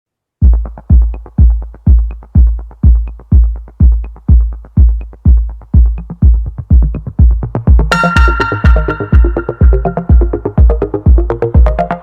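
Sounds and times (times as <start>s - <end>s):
heavy kick drum: 0.4s - 11.9s
electronic dance music: 0.4s - 12.0s
short high note: 7.9s - 10.5s.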